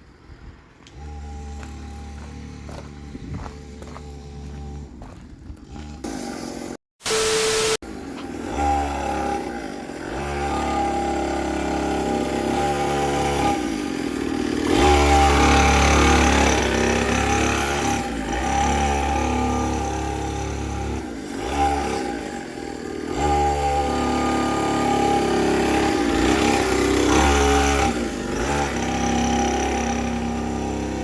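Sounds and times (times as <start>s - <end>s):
small quad engine revving: 0.8s - 6.8s, 7.4s - 31.0s.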